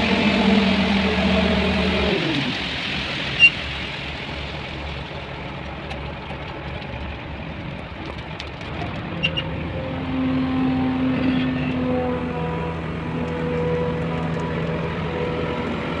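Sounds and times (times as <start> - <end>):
steady humming tone: 0.0 - 3.5
heavy vehicle engine rumbling: 0.0 - 16.0.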